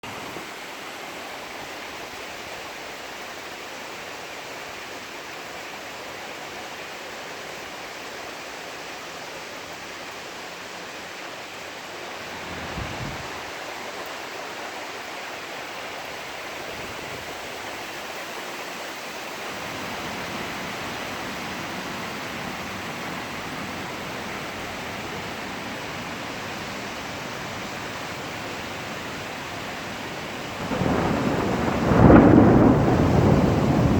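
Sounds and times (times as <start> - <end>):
hail and sleet hissing: 11.9 - 14.4, 28.8 - 33.9.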